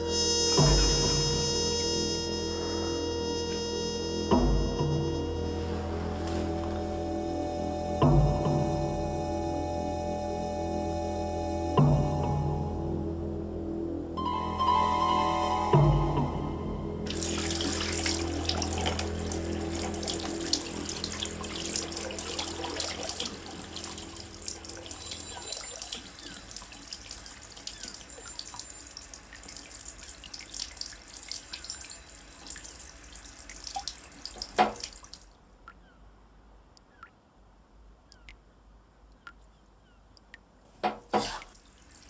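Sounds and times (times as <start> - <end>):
faint water drips: 4.7 - 7.3, 17.0 - 36.0, 38.1 - 42.0
tap water running into sink: 17.1 - 35.3, 40.9 - 42.0.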